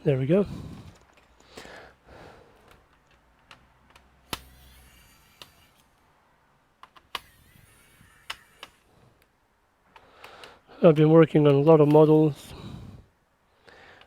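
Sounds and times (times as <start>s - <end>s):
plastic parts clicking: 0.8s - 1.8s, 2.5s - 6.1s, 6.8s - 9.3s, 9.9s - 12.4s.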